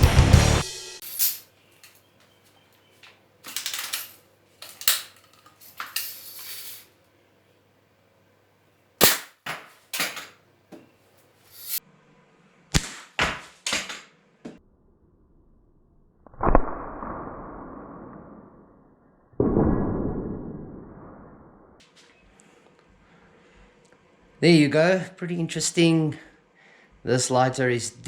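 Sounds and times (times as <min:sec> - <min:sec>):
air gun cocked and fired: 0:09.0 - 0:09.4.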